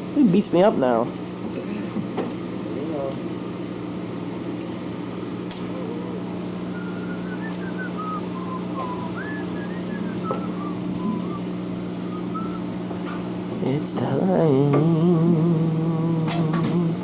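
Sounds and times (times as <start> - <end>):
steady low hum: 0.0 - 17.0
person whistling a tune: 6.7 - 12.7.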